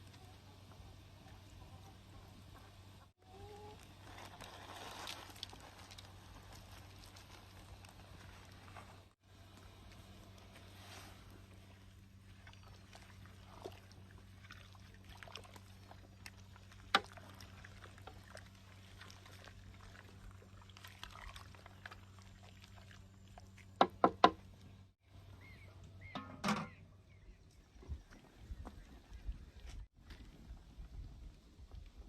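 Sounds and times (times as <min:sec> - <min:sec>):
low electrical hum: 0:00.0 - 0:23.8.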